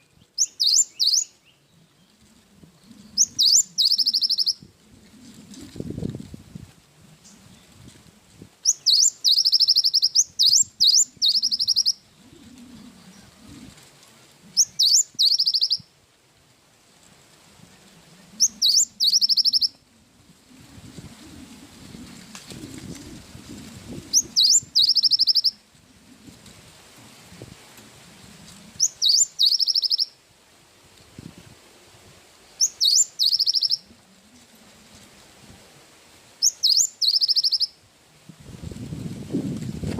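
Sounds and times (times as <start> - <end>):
bird singing whistles and chatter: 0.4 - 1.4, 3.1 - 4.6, 8.6 - 12.0, 14.6 - 15.9, 18.4 - 19.8, 24.1 - 25.6, 28.8 - 30.1, 32.6 - 33.9, 36.4 - 37.8.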